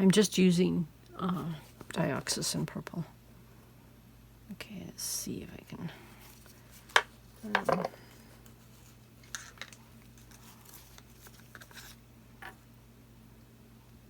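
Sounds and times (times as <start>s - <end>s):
paint cups clattering: 7.0s - 8.1s, 9.2s - 10.5s.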